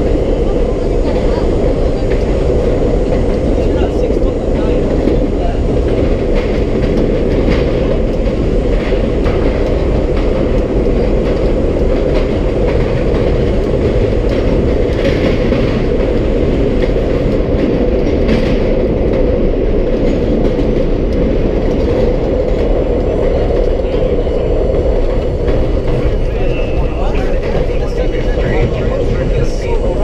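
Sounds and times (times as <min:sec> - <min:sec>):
subway car wheels rumbling: 0:00.0 - 0:30.0.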